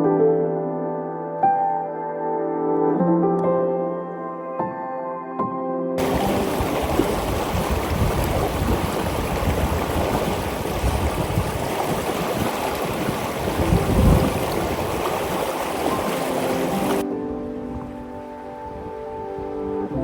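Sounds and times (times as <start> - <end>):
river water rushing: 6.0 - 17.0.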